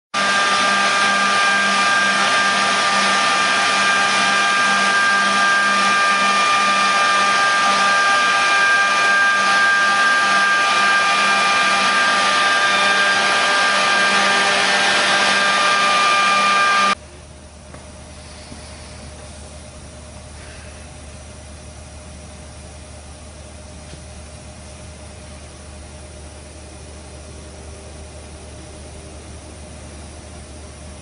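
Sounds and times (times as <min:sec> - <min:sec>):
workshop machinery motor whirring: 0:00.2 - 0:17.0.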